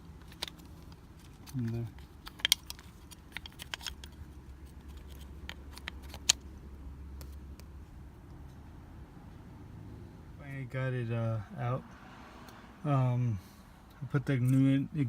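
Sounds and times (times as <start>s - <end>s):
plastic clip clicking and rattling: 0.2s - 4.2s, 4.9s - 6.4s.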